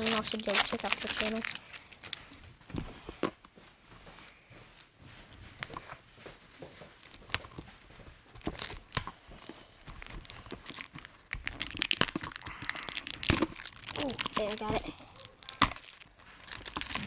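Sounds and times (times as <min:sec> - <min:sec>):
packaging tearing and crinkling: 0:00.0 - 0:02.9, 0:07.0 - 0:17.0.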